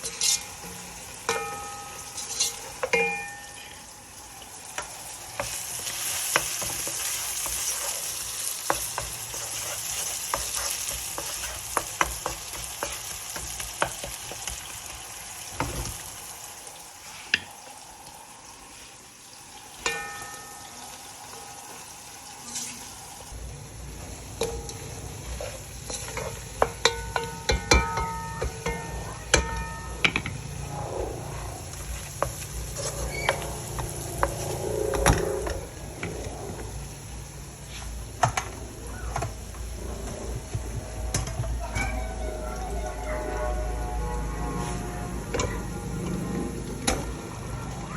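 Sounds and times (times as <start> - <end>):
utensil scraping a pan: 0.0 - 3.7, 5.4 - 14.7, 24.4 - 36.8
food sizzling in a pan: 0.0 - 47.9
low hum: 28.7 - 47.9.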